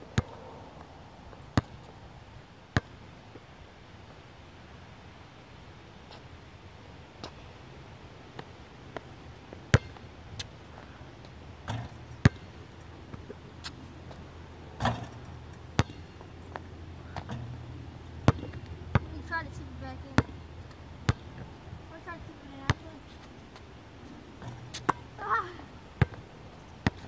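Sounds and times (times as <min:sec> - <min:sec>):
basketball bouncing: 0:01.6 - 0:01.9, 0:09.7 - 0:10.0, 0:11.6 - 0:14.2, 0:14.8 - 0:19.4, 0:20.1 - 0:20.4, 0:21.1 - 0:21.5, 0:24.4 - 0:25.1, 0:26.0 - 0:27.0
basketball striking hoop: 0:11.7 - 0:12.5, 0:14.8 - 0:15.2, 0:15.8 - 0:16.1.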